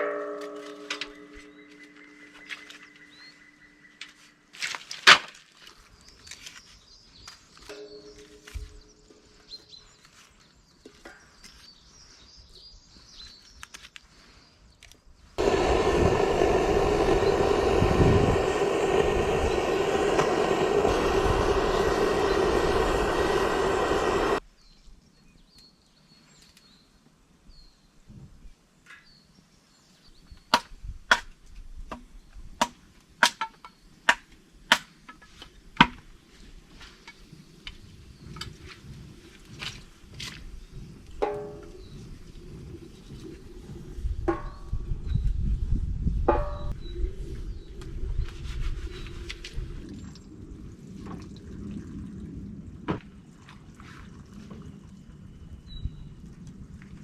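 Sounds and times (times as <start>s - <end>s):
loud steady mechanical noise: 15.4s - 24.4s.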